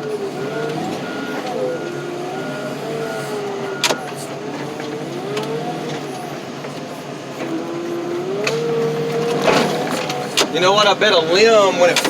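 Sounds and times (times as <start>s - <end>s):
backup beeper: 0.0s - 5.7s
tractor engine under load: 0.0s - 12.0s.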